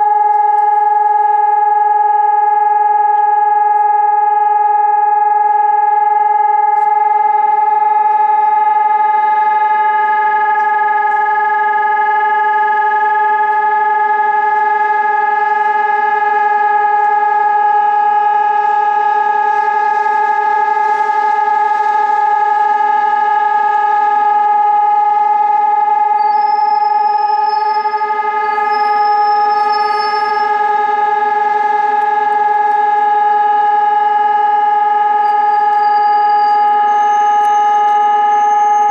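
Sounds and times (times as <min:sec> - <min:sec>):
warning siren steady tone: 0:00.0 - 0:38.9.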